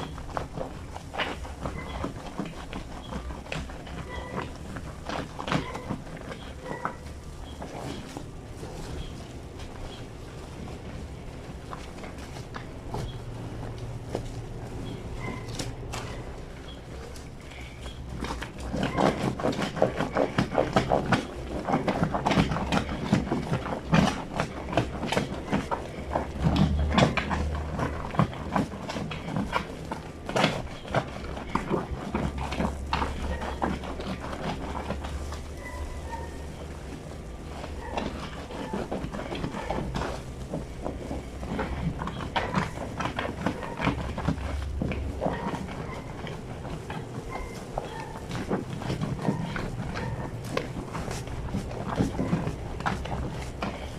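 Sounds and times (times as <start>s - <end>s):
steady low hum: 0.0s - 53.9s
wet cloth scrubbed on washboard: 17.8s - 53.9s.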